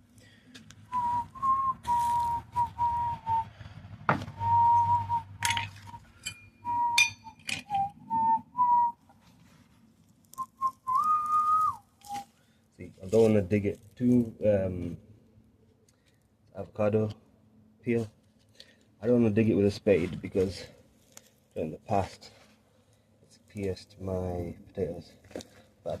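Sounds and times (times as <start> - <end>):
digging in soil: 0.6 - 2.7, 9.1 - 14.4
person whistling a tune: 0.9 - 3.5, 4.4 - 6.0, 6.6 - 9.0, 10.4 - 12.3.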